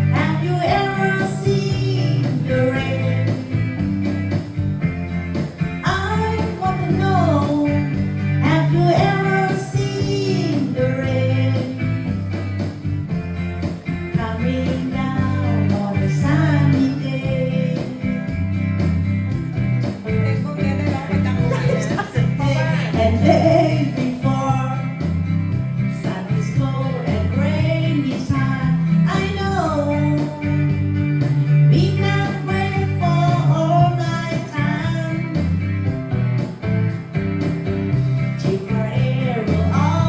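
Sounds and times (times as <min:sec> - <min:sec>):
person singing: 0:00.0 - 0:03.8, 0:05.8 - 0:12.0, 0:14.1 - 0:18.4, 0:19.9 - 0:25.2, 0:25.9 - 0:30.8, 0:31.6 - 0:35.4, 0:38.4 - 0:40.0
chord and bass backing: 0:00.0 - 0:40.0
guitar accompaniment: 0:00.0 - 0:40.0.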